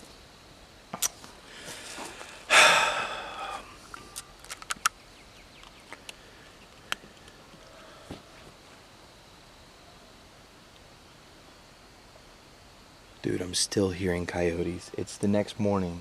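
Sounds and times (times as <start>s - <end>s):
man sighing heavily: 1.6s - 3.8s.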